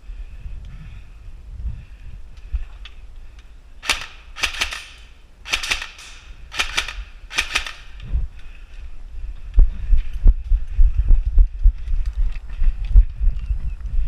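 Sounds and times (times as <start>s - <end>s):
airsoft gun shots: 3.8s - 8.0s.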